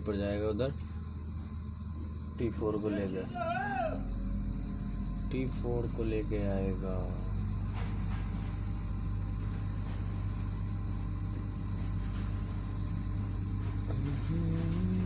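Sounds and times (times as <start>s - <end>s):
crane engine and hydraulics droning: 0.0s - 15.0s.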